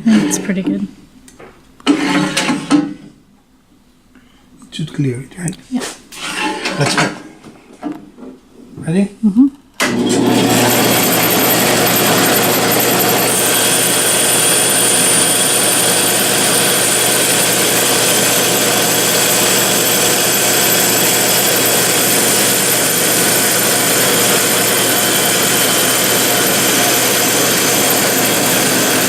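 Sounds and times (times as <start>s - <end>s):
power tool motor whirring: 9.8s - 29.0s.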